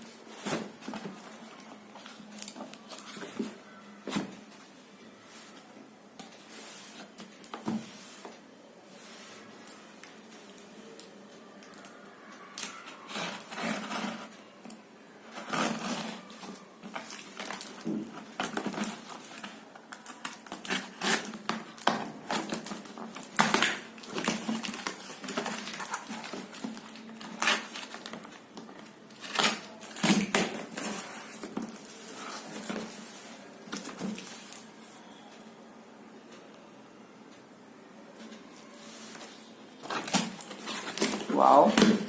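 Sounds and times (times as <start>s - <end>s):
packaging rustling and tearing: 39.8s - 42.0s.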